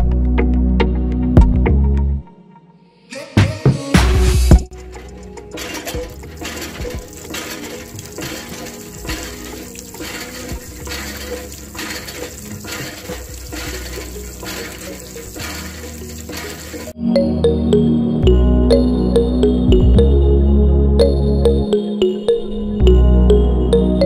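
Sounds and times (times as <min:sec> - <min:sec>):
water gushing from hand pump: 0:04.7 - 0:17.0.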